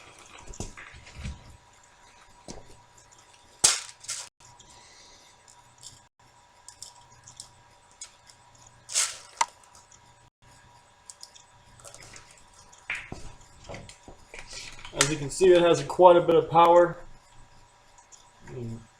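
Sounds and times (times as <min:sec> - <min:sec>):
faint clicks and ticks: 0:09.4 - 0:15.7, 0:16.6 - 0:18.8.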